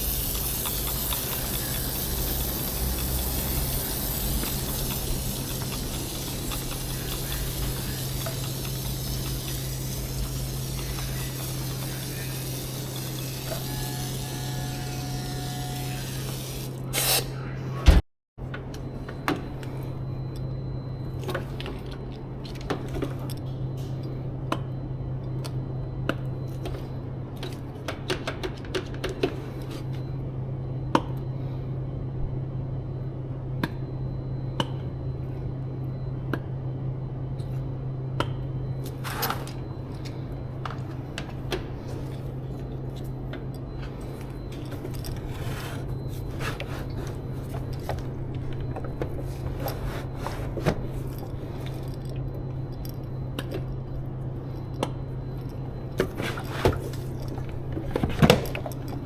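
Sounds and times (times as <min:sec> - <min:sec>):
spray bottle hiss: 0:00.0 - 0:14.1
items clicking and knocking: 0:54.8 - 0:59.0.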